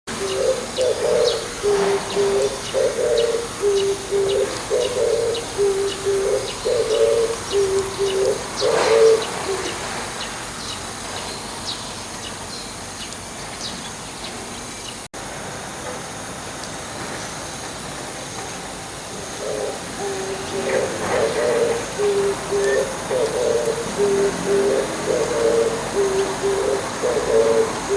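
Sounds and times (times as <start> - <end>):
dove cooing: 0.1 - 10.2, 19.1 - 27.9.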